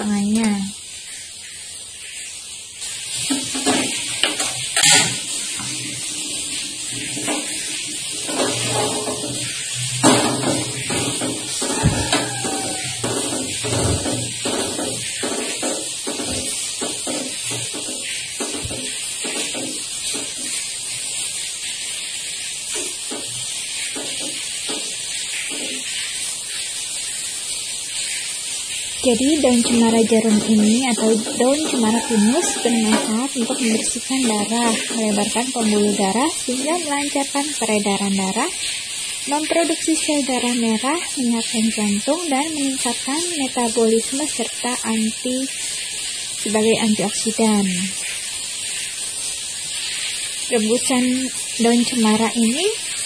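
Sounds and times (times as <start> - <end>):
water hissing: 0.0 - 53.0
bubbling: 2.8 - 21.7, 28.6 - 48.7.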